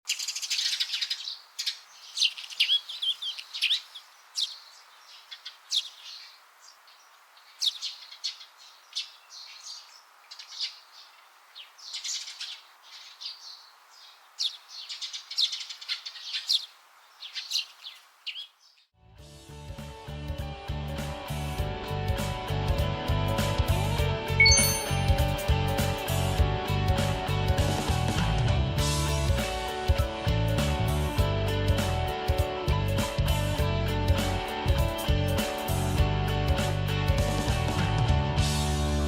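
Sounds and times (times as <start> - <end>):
small birds chirping: 0.0 - 19.0
faint background hiss: 0.1 - 18.8.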